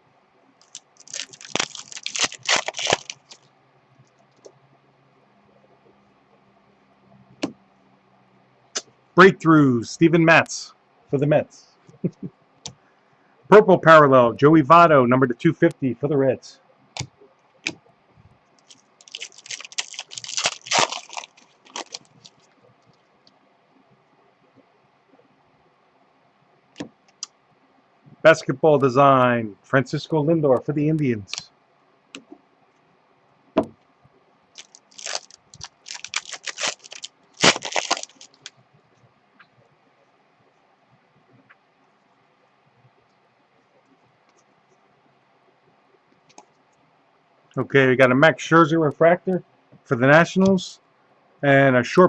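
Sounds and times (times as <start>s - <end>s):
wrapper being torn and crinkled: 0.6s - 3.4s, 18.6s - 22.4s, 34.6s - 38.5s.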